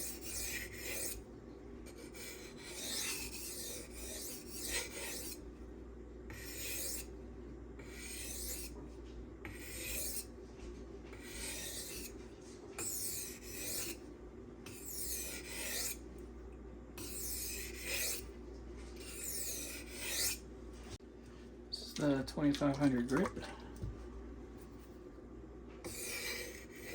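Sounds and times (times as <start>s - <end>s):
knife scraping on sharpening stone: 0.0s - 1.2s, 2.0s - 5.4s, 6.3s - 7.1s, 7.9s - 8.7s, 9.5s - 10.3s, 11.2s - 12.1s, 12.8s - 14.0s, 14.7s - 16.0s, 17.0s - 18.2s, 19.0s - 20.4s, 25.9s - 26.9s.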